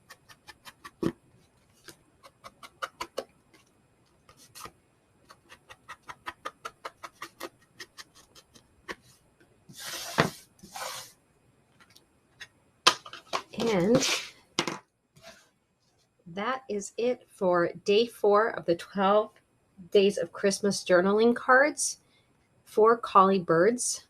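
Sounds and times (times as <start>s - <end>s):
ink pad rubbing on paper: 5.3s - 9.1s, 9.7s - 11.1s.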